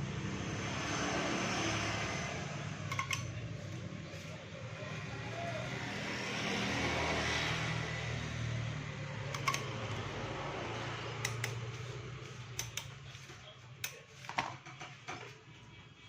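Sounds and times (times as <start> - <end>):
low vehicle engine hum: 0.0 - 13.8
hand tools and metal parts clicking: 2.9 - 3.8, 9.2 - 10.1, 11.2 - 15.4.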